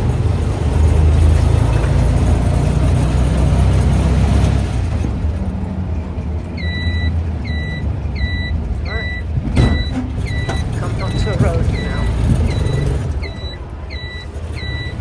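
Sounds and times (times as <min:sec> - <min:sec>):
motor rumble and road noise: 0:00.0 - 0:15.0
high electronic beep: 0:06.6 - 0:15.0.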